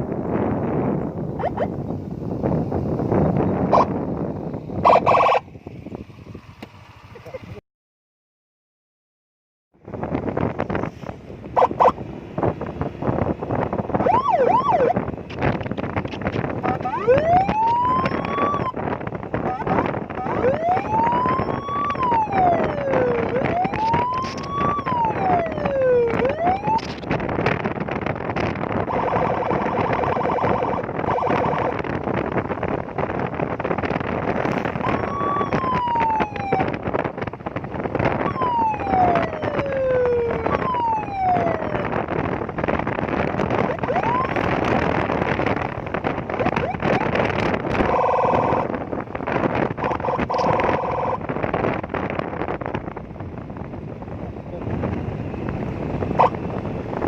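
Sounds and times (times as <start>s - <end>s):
electronic siren wailing: 4.8s - 5.5s, 11.6s - 12.0s, 13.9s - 15.0s, 16.6s - 27.1s, 28.8s - 31.9s, 34.5s - 36.8s, 38.1s - 42.0s, 43.5s - 44.7s, 46.3s - 48.7s, 49.8s - 51.3s
pulsing buzzing siren tone: 4.8s - 5.5s, 11.6s - 12.0s, 13.9s - 15.0s, 16.6s - 26.9s, 28.8s - 31.9s, 34.6s - 36.8s, 38.2s - 42.0s, 43.5s - 44.5s, 46.4s - 48.7s, 49.8s - 51.2s
steady rushing noise: 9.8s - 57.0s.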